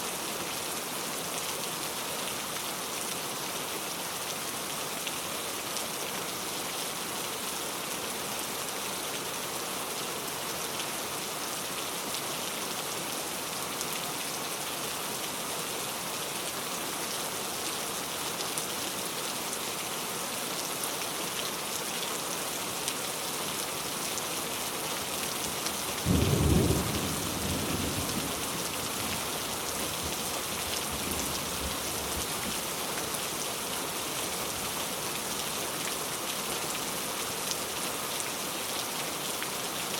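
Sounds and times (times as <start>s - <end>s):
heavy rain hissing: 24.5s - 33.3s.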